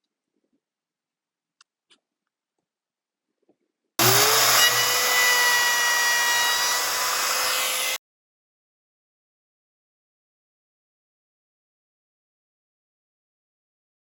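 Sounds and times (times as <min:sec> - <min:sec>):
power tool motor whining: 0:04.0 - 0:08.0.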